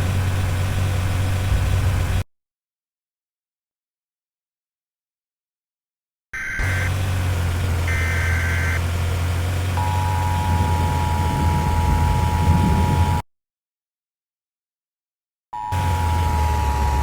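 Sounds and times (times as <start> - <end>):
loud low hum: 6.6 - 13.2, 15.7 - 17.0
two-tone attention signal: 7.9 - 8.8, 9.8 - 13.2.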